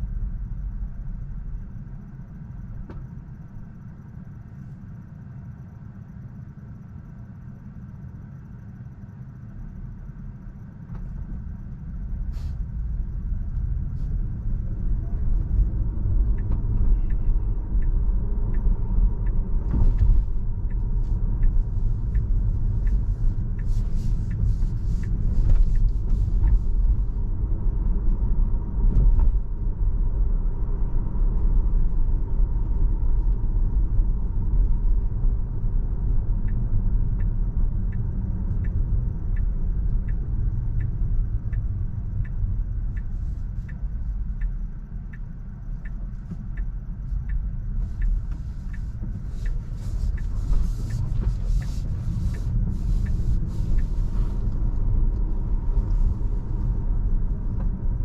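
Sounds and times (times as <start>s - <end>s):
road and tyre rumble in car: 0.0s - 58.0s
faint ticks: 12.2s - 27.2s, 34.0s - 58.0s.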